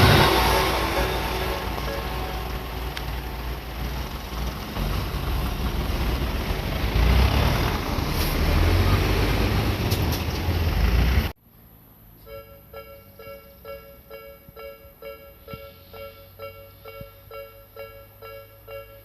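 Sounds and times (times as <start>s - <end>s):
train wheels rumbling on rails: 0.0s - 11.4s.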